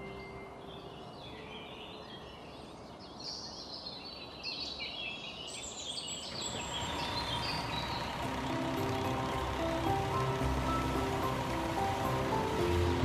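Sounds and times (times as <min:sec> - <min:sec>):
music: 0:00.0 - 0:00.9, 0:07.5 - 0:13.0
birds chirping: 0:00.0 - 0:13.0
vehicle: 0:06.1 - 0:13.0
steady tones: 0:06.5 - 0:13.0.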